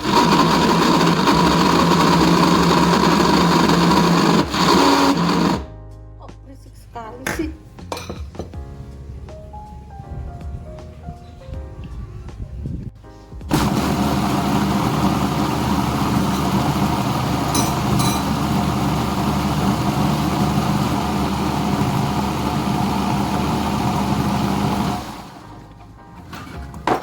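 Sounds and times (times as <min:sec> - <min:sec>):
blender motor running: 0:00.0 - 0:05.7, 0:13.5 - 0:25.6.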